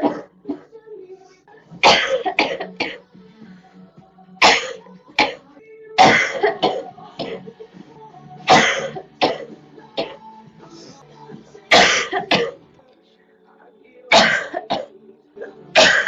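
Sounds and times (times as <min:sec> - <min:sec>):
girl coughing: 0:00.0 - 0:00.7, 0:01.8 - 0:03.0, 0:04.4 - 0:05.4, 0:06.0 - 0:07.4, 0:08.5 - 0:10.2, 0:11.7 - 0:12.6, 0:14.1 - 0:14.9, 0:15.8 - 0:16.0.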